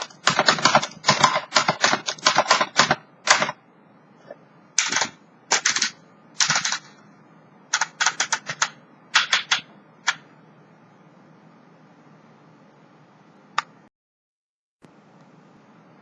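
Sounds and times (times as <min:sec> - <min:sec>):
typewriter keystrokes: 0:00.0 - 0:03.6, 0:04.8 - 0:06.9, 0:07.7 - 0:10.2.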